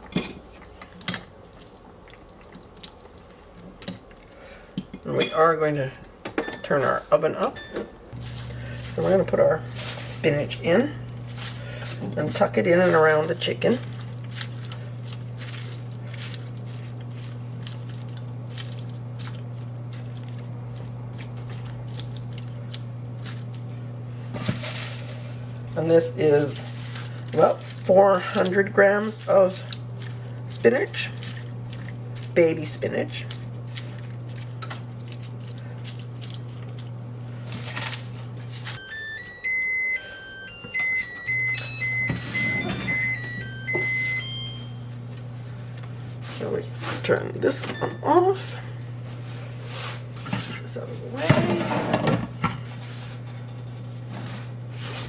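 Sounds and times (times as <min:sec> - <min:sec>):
liquid boiling in a pan: 0:00.0 - 0:04.9, 0:11.6 - 0:38.6
steady low hum: 0:05.2 - 0:12.8
electronic beep melody: 0:07.5 - 0:08.0, 0:38.8 - 0:44.9, 0:47.7 - 0:48.3.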